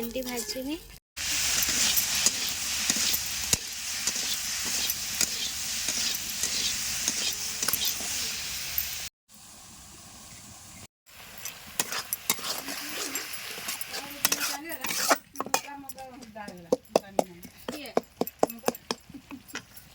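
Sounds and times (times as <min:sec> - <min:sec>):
spatula scraping a pan: 0:01.2 - 0:08.5, 0:11.4 - 0:16.6
okra sizzling in hot oil: 0:01.2 - 0:16.5.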